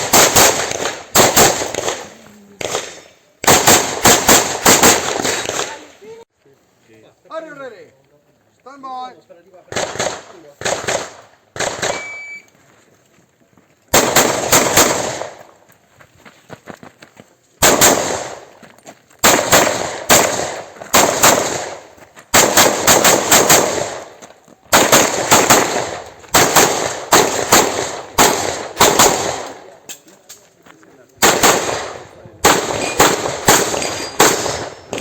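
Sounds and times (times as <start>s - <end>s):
shot timer beep: 12.0s - 12.5s
handgun shots echoing: 31.2s - 35.0s.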